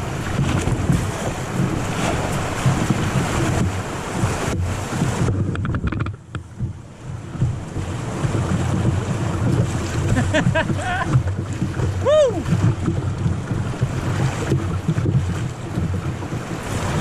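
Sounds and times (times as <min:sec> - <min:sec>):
wind buffeting microphone: 0:00.0 - 0:17.0
river rapids rushing: 0:09.2 - 0:13.0
person whooping: 0:10.8 - 0:11.1, 0:12.0 - 0:12.5
person calling: 0:12.0 - 0:12.5.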